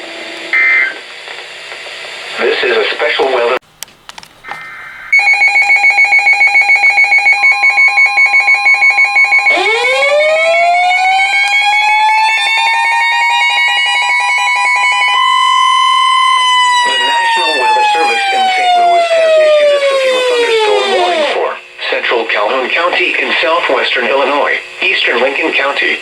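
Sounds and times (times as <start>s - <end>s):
siren tone winding up: 4.5s - 21.6s
electronic alarm beeping: 4.6s - 21.3s.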